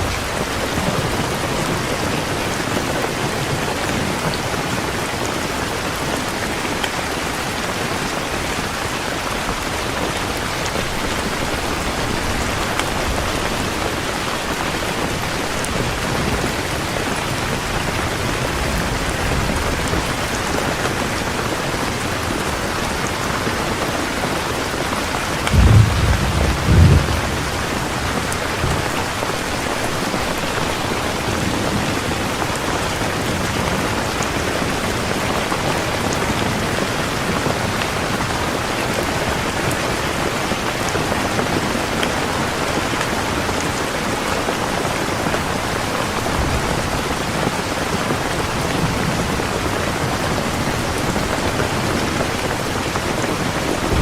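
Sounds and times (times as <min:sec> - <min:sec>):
heavy rain falling: 0:00.0 - 0:54.0
low rumble of thunder: 0:15.4 - 0:21.2, 0:25.2 - 0:32.3, 0:53.8 - 0:54.0.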